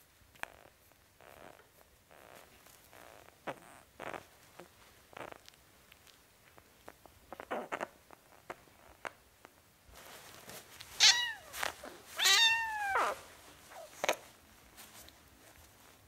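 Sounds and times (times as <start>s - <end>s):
cat meowing: 11.0s - 11.5s, 12.2s - 13.2s.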